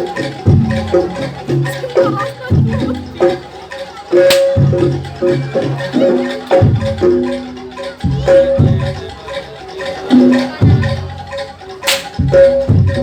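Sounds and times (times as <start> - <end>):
deep low drum strokes: 4.6 - 9.3.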